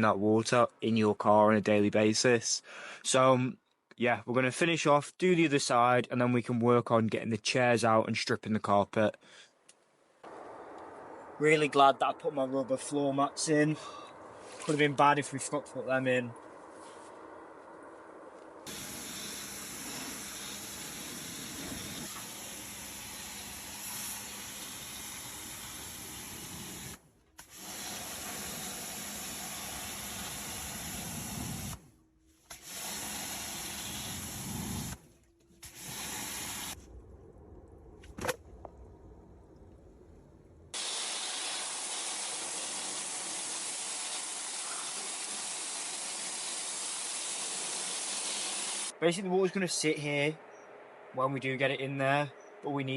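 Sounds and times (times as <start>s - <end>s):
pressure washer spraying water: 18.7s - 31.8s, 32.5s - 35.0s, 35.6s - 36.8s, 40.8s - 48.9s.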